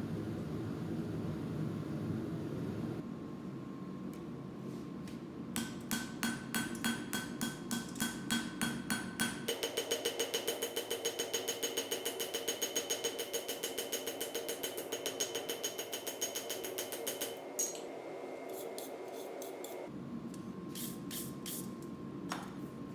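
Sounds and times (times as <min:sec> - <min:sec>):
hammer striking steel on anvil: 0:05.6 - 0:17.9.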